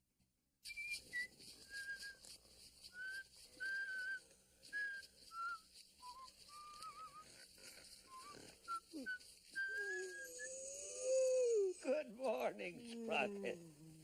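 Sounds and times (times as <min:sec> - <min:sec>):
person whistling a tune: 0:00.6 - 0:07.4, 0:08.0 - 0:11.6.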